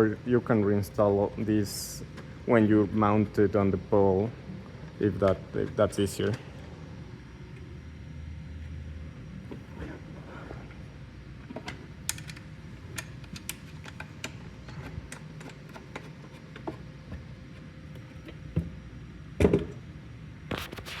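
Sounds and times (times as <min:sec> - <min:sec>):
low steady hum: 0:00.0 - 0:21.0
small parts clicking and tapping: 0:11.6 - 0:16.8.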